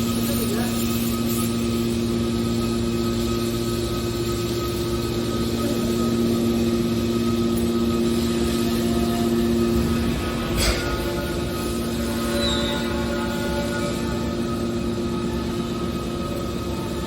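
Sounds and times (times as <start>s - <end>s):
scrap baler machine hum: 4.6s - 17.0s.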